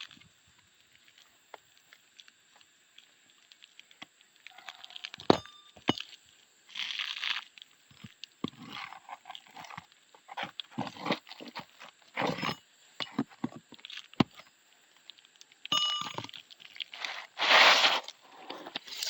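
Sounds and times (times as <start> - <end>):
shingles scraping and cracking: 8.0 - 14.5, 16.2 - 19.0.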